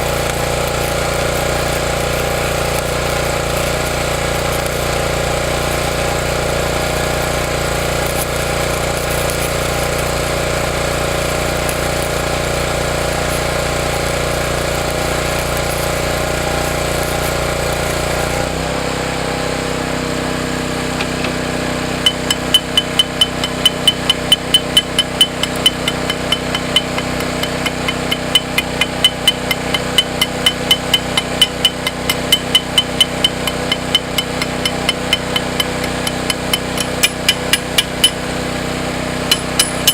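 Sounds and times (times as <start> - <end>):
machine hum: 20.9 - 38.6
hammer striking metal: 21.0 - 38.3, 39.3 - 39.9.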